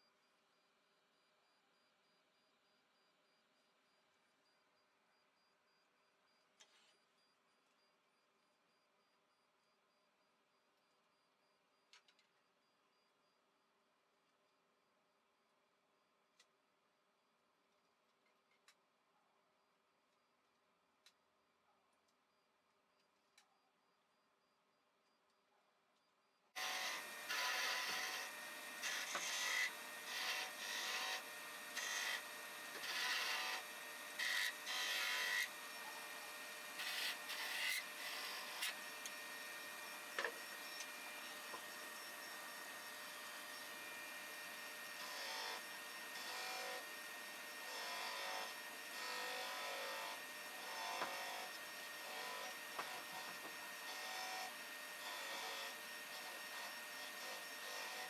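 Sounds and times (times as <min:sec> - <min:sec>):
tool working wood in short strokes: 0:26.6 - 0:58.0.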